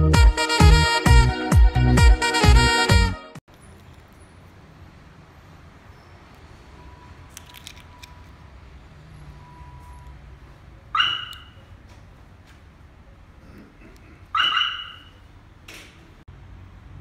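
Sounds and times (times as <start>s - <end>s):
car alarm siren chirps: 10.9s - 11.7s, 14.3s - 15.3s.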